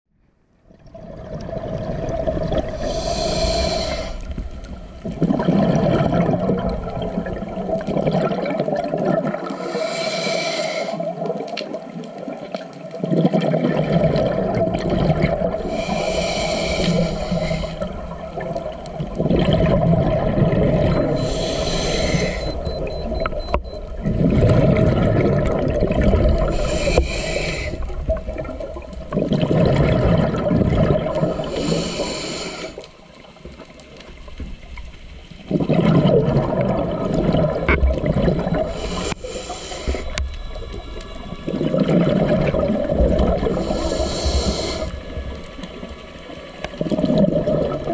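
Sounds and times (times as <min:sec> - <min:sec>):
exhaled bubbles rumbling: 0:00.6 - 0:09.7, 0:11.0 - 0:47.9
regulator hissing inhale: 0:02.7 - 0:04.5, 0:09.5 - 0:11.1, 0:15.6 - 0:18.2, 0:21.0 - 0:22.7, 0:26.5 - 0:28.0, 0:31.3 - 0:33.0, 0:38.6 - 0:41.4, 0:43.5 - 0:45.1.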